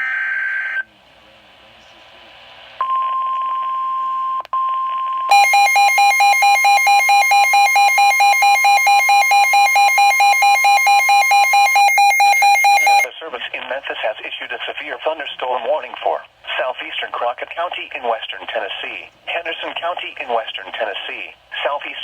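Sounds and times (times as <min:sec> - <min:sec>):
steady warning alarm tone: 0:05.3 - 0:13.1.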